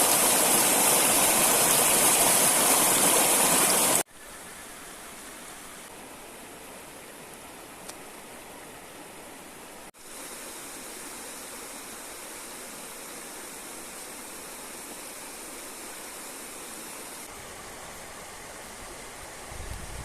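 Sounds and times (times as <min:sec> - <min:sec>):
river water flowing: 0:00.0 - 0:19.7.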